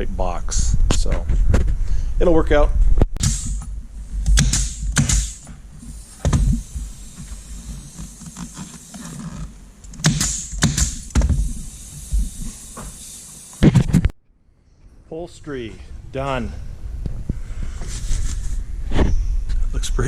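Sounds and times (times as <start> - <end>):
low steady rumble: 0.0 - 10.1, 14.9 - 20.0
short knocks and clunks: 3.2 - 13.0.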